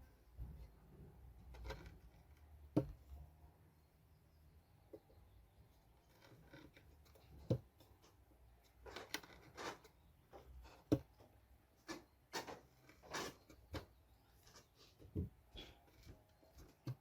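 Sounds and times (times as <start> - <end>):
scraping strokes: 11.8 - 15.0.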